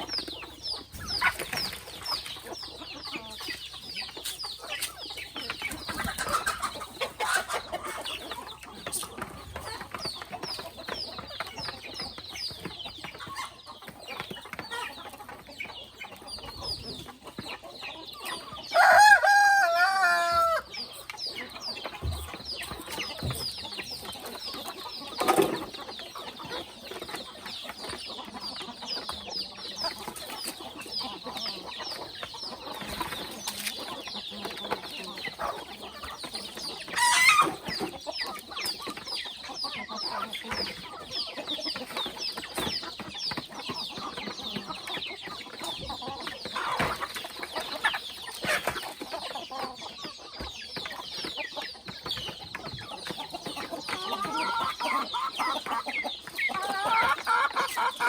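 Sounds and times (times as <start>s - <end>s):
chickens clucking: 0.0s - 58.0s
rooster crowing: 18.8s - 20.7s.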